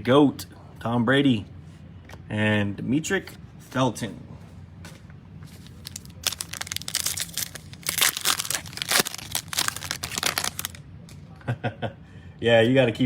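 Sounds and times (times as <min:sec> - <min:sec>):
foil pack tearing and crinkling: 0:05.6 - 0:10.8.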